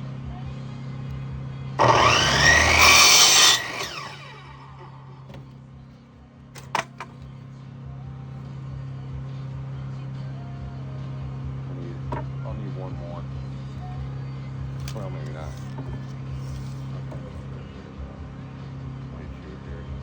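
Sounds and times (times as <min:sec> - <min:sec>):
power saw cutting wood: 0:01.8 - 0:05.3.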